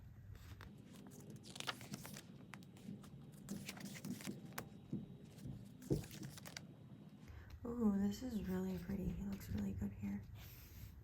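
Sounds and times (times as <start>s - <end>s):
book pages turning: 0.3s - 6.7s.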